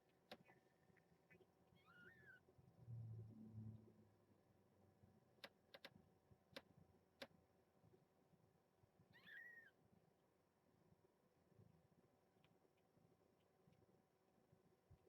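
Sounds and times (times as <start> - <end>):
kitten mewing: 1.8 - 2.4.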